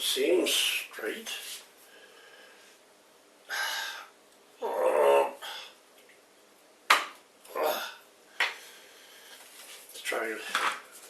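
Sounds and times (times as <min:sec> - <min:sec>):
creaking or grunting sound: 0:04.6 - 0:05.4.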